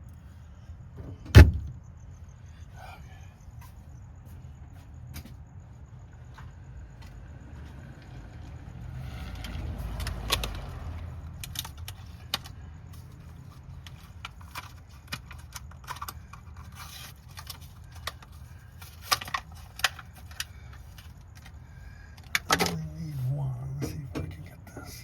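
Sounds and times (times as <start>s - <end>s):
low steady rumble: 19.6s - 25.0s.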